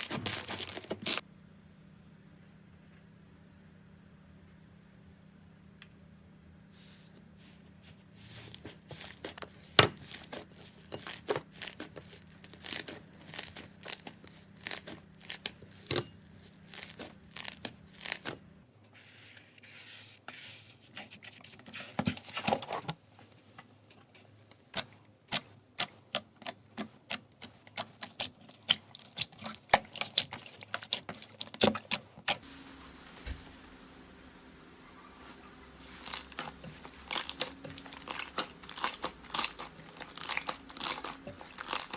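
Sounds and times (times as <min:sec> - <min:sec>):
slime squelching: 0:00.0 - 0:01.2, 0:06.8 - 0:18.4, 0:24.8 - 0:32.4, 0:35.2 - 0:41.9.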